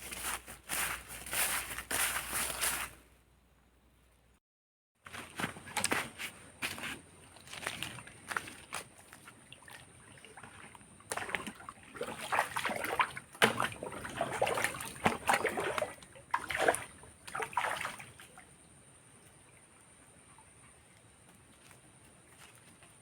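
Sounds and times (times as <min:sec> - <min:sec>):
water splashing and sloshing: 0:05.0 - 0:22.9.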